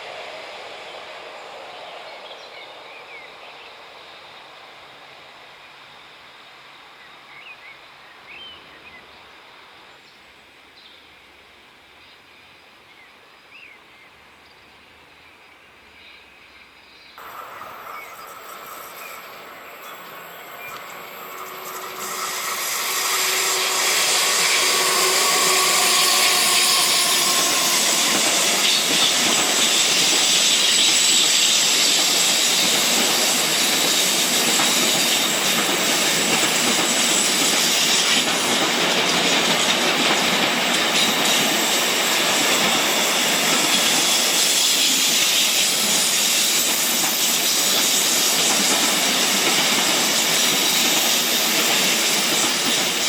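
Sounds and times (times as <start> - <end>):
train wheels rushing on rails: 0.0 - 5.2, 17.2 - 53.0.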